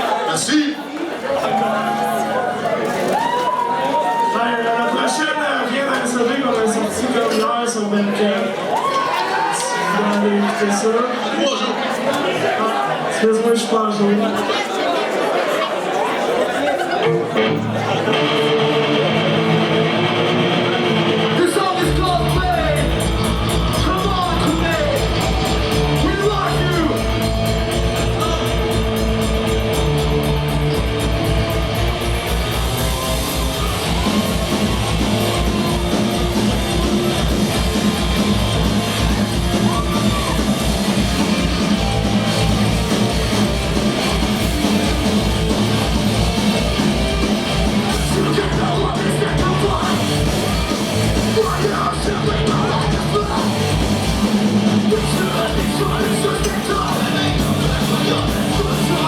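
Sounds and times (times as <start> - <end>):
shouted vocals: 1.3 - 5.2, 8.6 - 13.2, 31.6 - 59.0
electric guitar: 17.0 - 59.0
drums and bass fast beat: 19.6 - 59.0.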